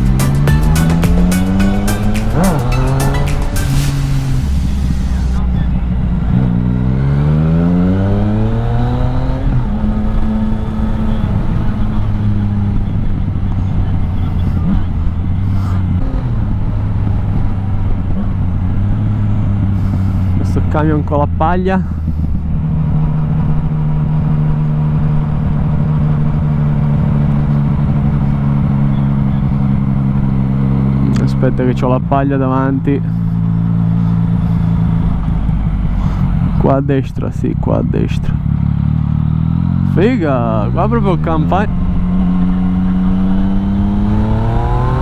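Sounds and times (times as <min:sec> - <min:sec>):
constant low rush: 0:00.0 - 0:07.0
motorcycle engine revving: 0:00.0 - 0:36.9, 0:37.5 - 0:45.0.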